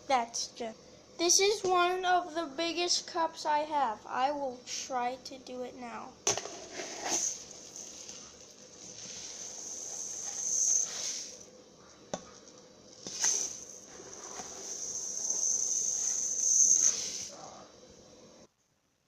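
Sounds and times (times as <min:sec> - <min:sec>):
small pieces pouring into a cup: 0:06.5 - 0:11.4, 0:13.0 - 0:17.3.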